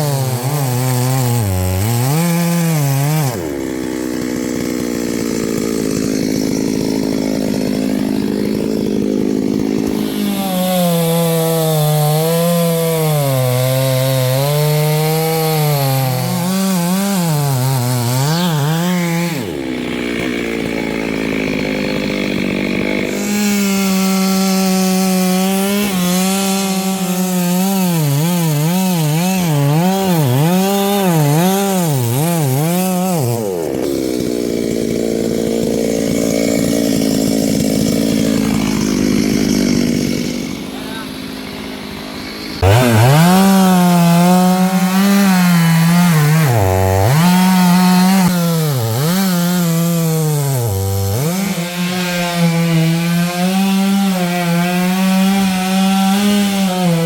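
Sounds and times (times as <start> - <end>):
chainsaw cutting log: 0.0 - 57.0.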